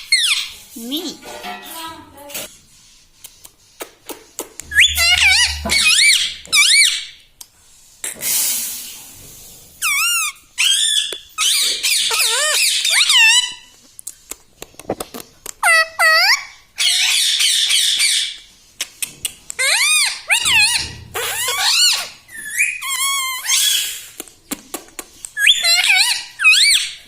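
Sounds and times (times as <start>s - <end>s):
parakeet squawking and screeching: 0.0s - 0.6s, 4.7s - 7.2s, 9.8s - 13.7s, 15.6s - 18.4s, 19.6s - 24.0s, 25.4s - 27.0s.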